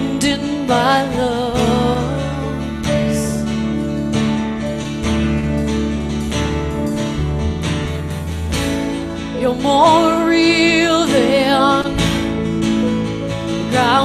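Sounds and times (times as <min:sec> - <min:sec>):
acoustic guitar strumming: 0:00.0 - 0:14.0
low bass notes: 0:00.0 - 0:14.0.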